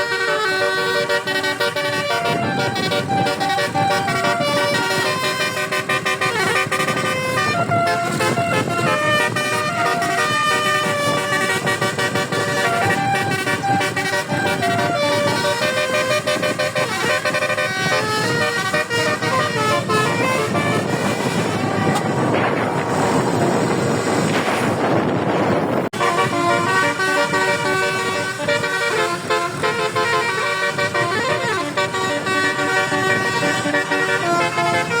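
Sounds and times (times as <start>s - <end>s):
multi-trumpet bus horn melody: 0.0s - 35.0s
rushing noise: 19.0s - 29.6s.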